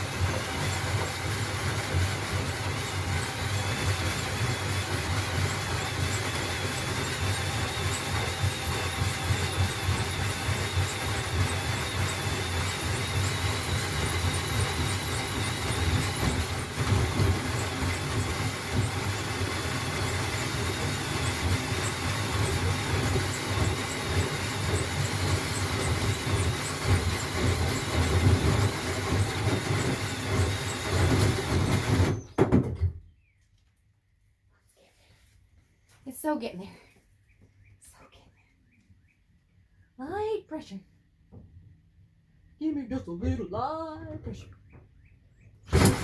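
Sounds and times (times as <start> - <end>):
power tool cutting: 0.0 - 32.3, 45.7 - 46.0.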